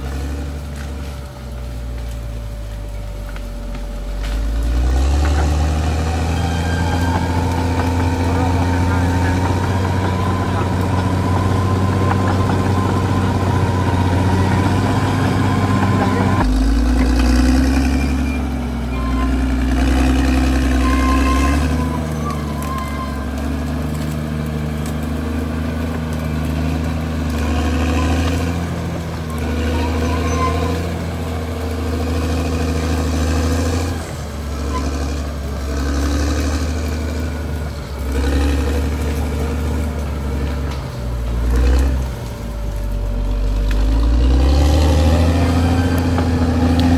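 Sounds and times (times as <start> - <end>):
bulldozer diesel engine under load: 0.0 - 46.9.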